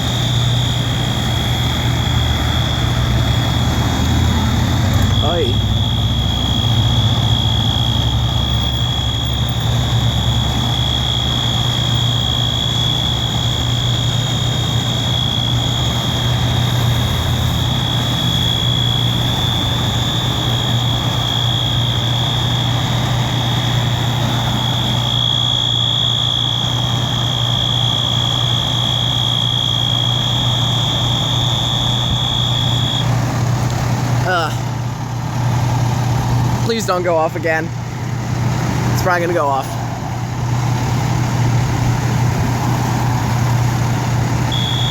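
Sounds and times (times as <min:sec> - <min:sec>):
fire alarm horn tone: 0:00.0 - 0:33.4, 0:44.2 - 0:44.9
fire truck engine idling: 0:00.0 - 0:44.9.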